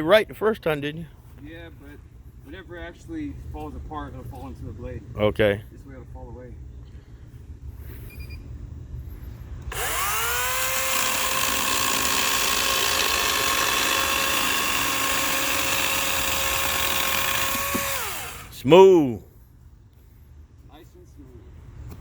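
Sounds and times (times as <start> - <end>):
electric chainsaw whining: 9.7 - 18.7.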